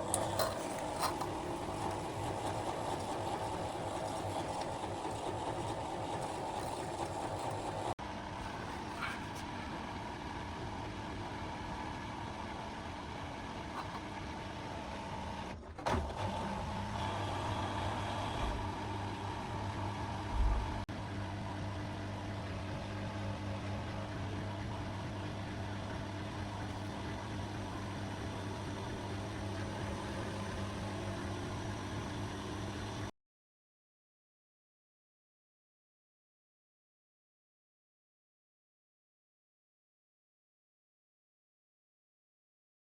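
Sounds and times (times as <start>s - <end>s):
washing machine motor hum: 0.0s - 33.1s.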